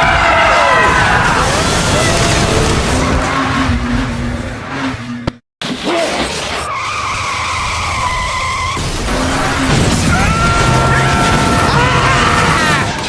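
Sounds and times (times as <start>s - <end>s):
tyres skidding: 0.0s - 13.0s
race car engine: 0.3s - 5.4s
high tyre squeal: 5.9s - 11.9s.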